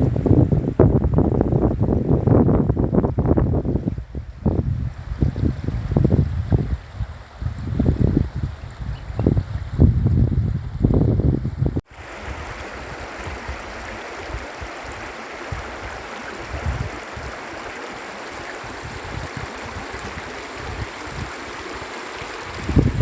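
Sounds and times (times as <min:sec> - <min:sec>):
wind buffeting microphone: 0:00.0 - 0:17.7, 0:18.3 - 0:23.0
stream flowing: 0:11.8 - 0:23.0.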